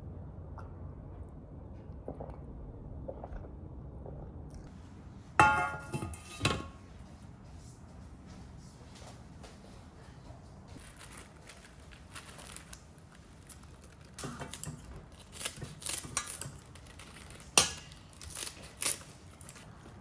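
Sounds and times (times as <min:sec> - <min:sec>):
kitchen rustles and clicks: 0:05.4 - 0:07.1, 0:10.7 - 0:20.0.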